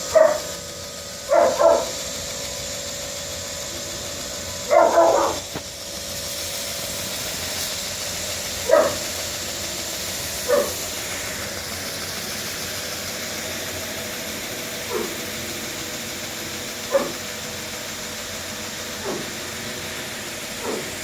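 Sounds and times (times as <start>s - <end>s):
dog barking: 0.0s - 0.5s, 1.3s - 2.0s, 4.7s - 5.5s, 8.6s - 9.1s, 10.4s - 10.9s, 14.8s - 15.2s, 16.9s - 17.3s, 19.0s - 19.4s, 20.6s - 21.0s
knife grinder hissing: 0.0s - 21.0s.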